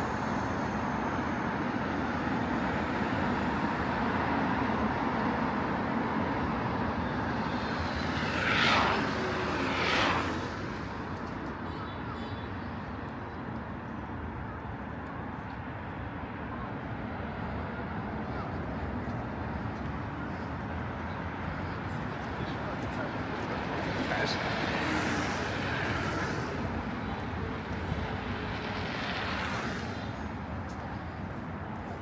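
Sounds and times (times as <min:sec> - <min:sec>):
city street traffic: 0:00.0 - 0:32.0
vehicles passing close by: 0:00.0 - 0:32.0.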